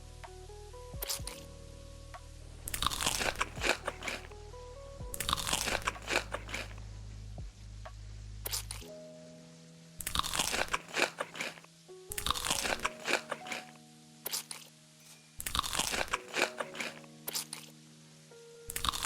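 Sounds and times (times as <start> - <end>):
soft background music: 0.0 - 19.0
crunchy food being chewed: 2.7 - 4.3, 5.2 - 6.7, 10.0 - 11.6, 12.2 - 13.7, 15.4 - 17.6, 18.8 - 19.0.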